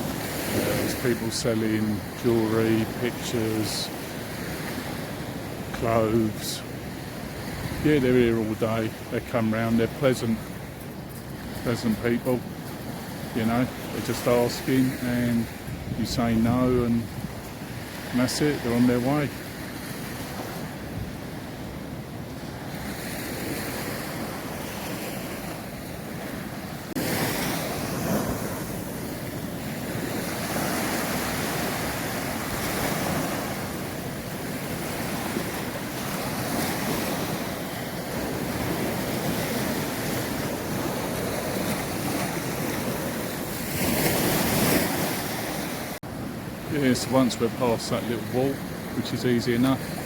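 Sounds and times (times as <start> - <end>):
sea waves on sandy beach: 0.0 - 50.0
wind buffeting microphone: 15.5 - 17.9.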